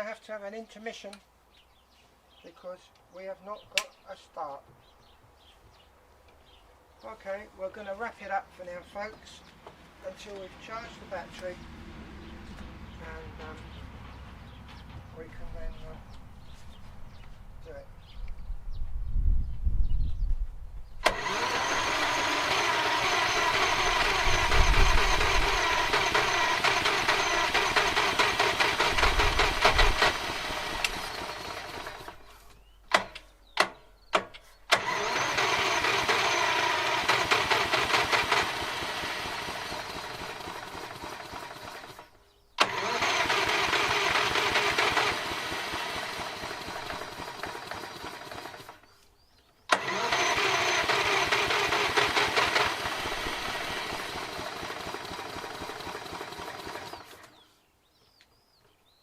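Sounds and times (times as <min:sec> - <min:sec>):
lawn mower electric starter cranking: 0:21.0 - 0:49.0, 0:49.6 - 0:57.5.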